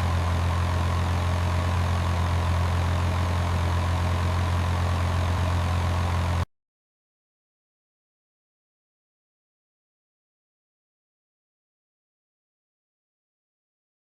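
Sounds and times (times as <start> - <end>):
low engine-like drone: 0.0 - 6.4.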